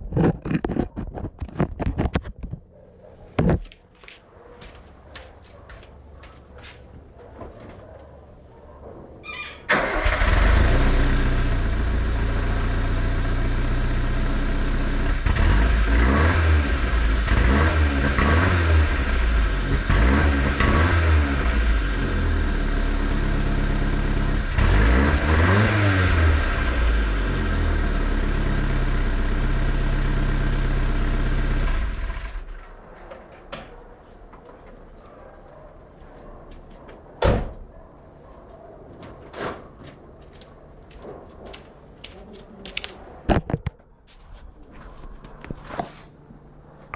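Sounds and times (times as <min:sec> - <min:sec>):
car engine idling and revving: 0:09.7 - 0:32.8.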